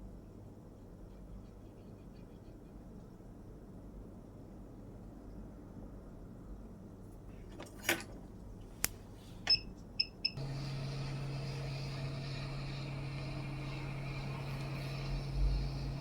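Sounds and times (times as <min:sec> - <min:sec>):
hot air station blowing: 0:10.4 - 0:16.0.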